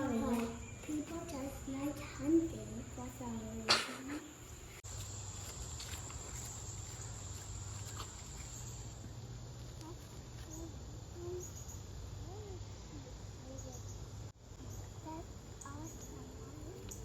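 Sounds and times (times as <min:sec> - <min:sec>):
distant voices: 0:00.0 - 0:17.0
insect trilling: 0:04.2 - 0:14.0.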